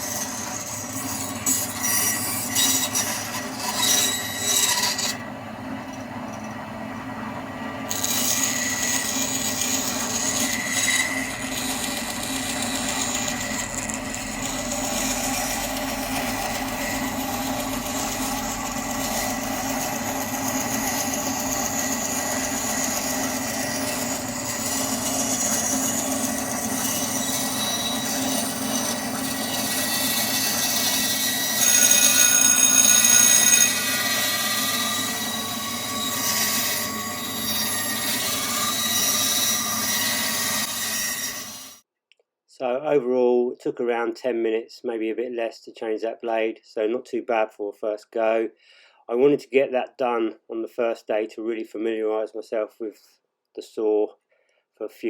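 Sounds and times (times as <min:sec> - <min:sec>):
bandsaw cutting wood: 0:00.0 - 0:05.2, 0:07.9 - 0:41.8.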